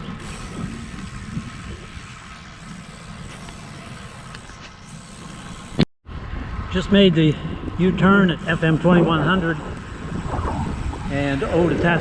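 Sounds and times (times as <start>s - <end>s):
wind on microphone: 0.0s - 4.3s, 6.1s - 12.0s
bicycle road noise: 0.0s - 12.0s.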